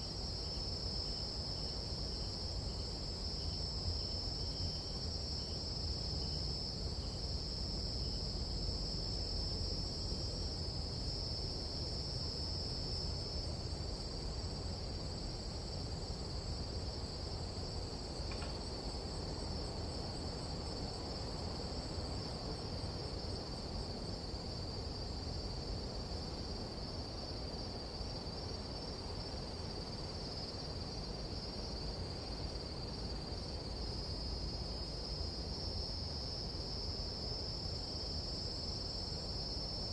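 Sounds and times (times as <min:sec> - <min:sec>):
night insects chirping: 0:00.0 - 0:39.9.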